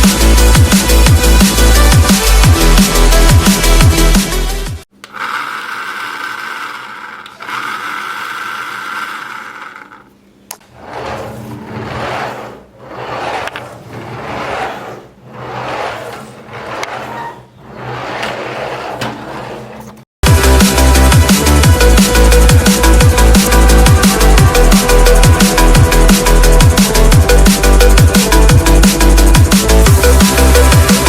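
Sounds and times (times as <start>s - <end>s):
toy car electric motor whine: 5.0s - 10.1s.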